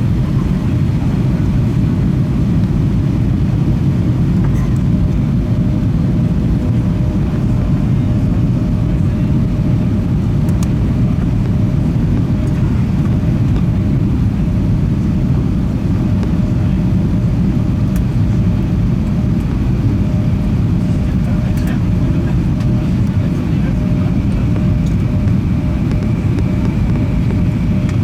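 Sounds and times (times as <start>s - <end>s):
aircraft cabin engine rumble: 0.0s - 28.0s.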